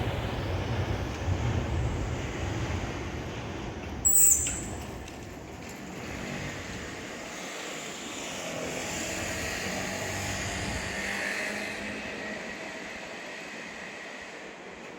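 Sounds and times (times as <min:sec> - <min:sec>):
train running with high whine: 0:00.0 - 0:14.9.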